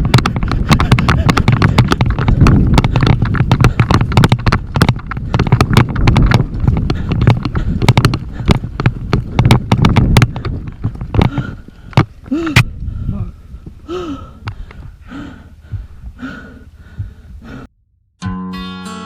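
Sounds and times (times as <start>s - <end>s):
running footsteps: 0.0s - 17.7s
person gasping for breath: 6.8s - 8.7s, 11.2s - 17.7s.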